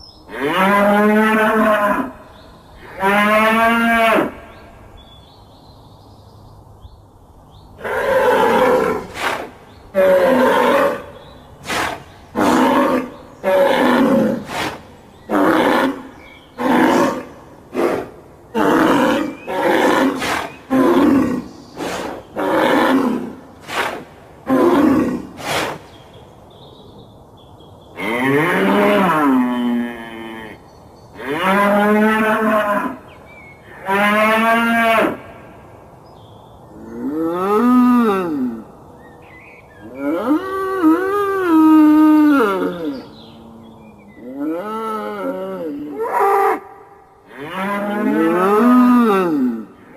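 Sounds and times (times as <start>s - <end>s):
bull bellowing: 47.3s - 49.9s.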